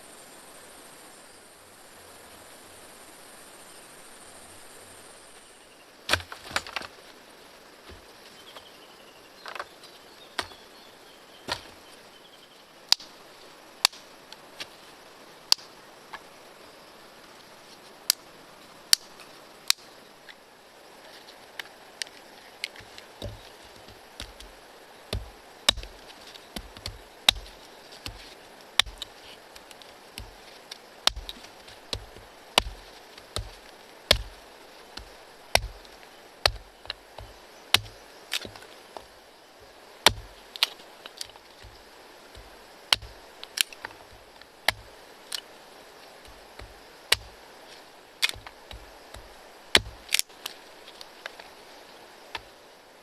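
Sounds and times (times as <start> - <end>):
hatchet chopping wood: 6.1 - 6.9, 7.9 - 8.1, 10.4 - 10.6, 22.7 - 30.4, 31.0 - 38.7, 40.0 - 41.8, 42.4 - 45.0, 46.2 - 47.4, 48.2 - 50.3.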